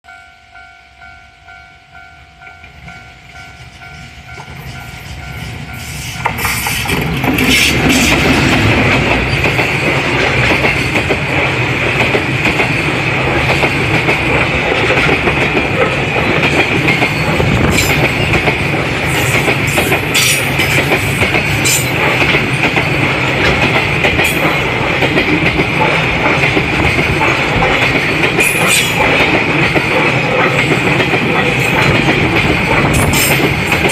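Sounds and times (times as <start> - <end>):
level crossing warning bell: 0.0 - 6.4
freight train passing: 0.0 - 33.9
wheels clattering over rail joints: 6.3 - 33.9.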